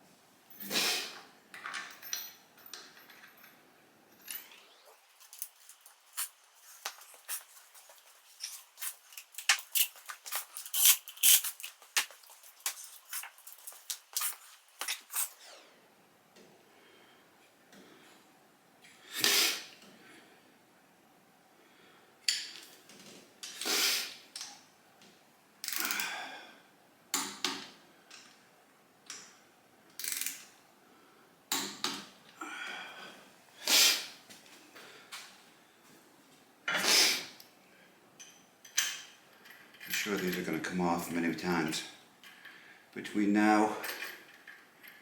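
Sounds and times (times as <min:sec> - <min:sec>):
metal tools clanking and scraping: 0:08.3 - 0:11.7.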